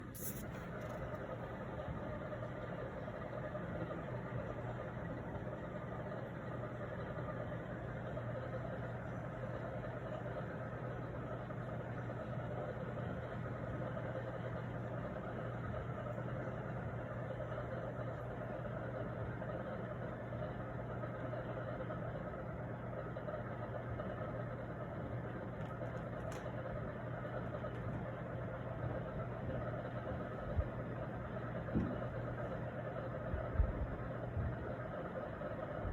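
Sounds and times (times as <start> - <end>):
condensate pump humming: 0.0 - 35.9.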